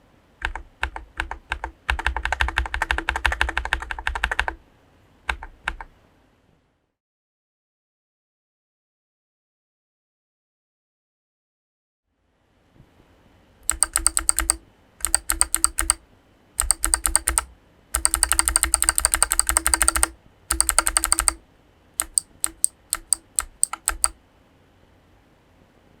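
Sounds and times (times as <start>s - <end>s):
clicky keyboard typing: 0.4s - 4.6s, 5.3s - 5.9s, 13.6s - 16.0s, 16.6s - 21.4s, 22.0s - 24.2s.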